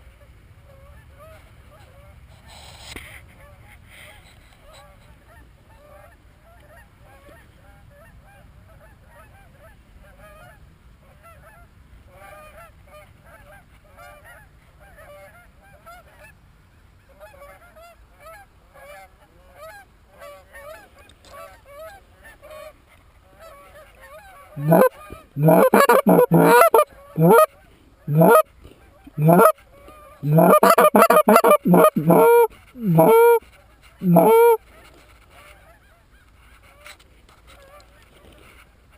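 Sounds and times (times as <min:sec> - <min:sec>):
geese honking: 0:24.6 - 0:27.5, 0:28.1 - 0:28.4, 0:29.1 - 0:29.5, 0:30.2 - 0:33.4, 0:34.0 - 0:34.6.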